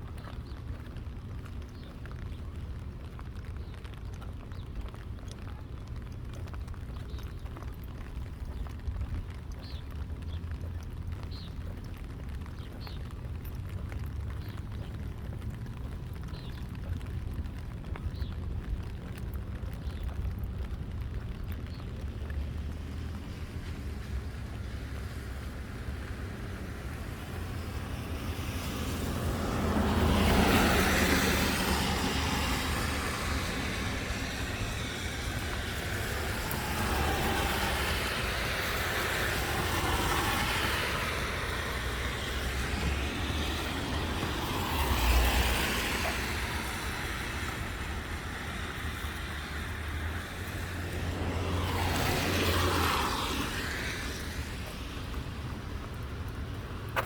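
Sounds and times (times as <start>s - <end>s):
low traffic rumble: 0.0s - 57.0s
vehicles passing: 0.0s - 57.0s.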